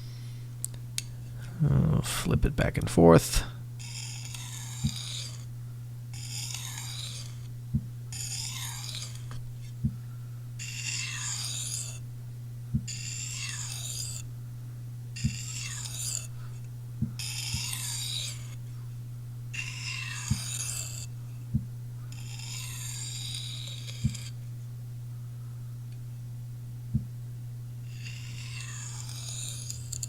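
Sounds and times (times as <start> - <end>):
steady low hum: 0.0 - 30.0
knife scraping sharpening stone: 3.8 - 5.5, 6.2 - 7.5, 8.1 - 9.3, 10.6 - 12.0, 12.9 - 14.3, 15.2 - 16.3, 17.2 - 18.6, 19.6 - 21.1, 22.1 - 24.4, 27.9 - 30.0.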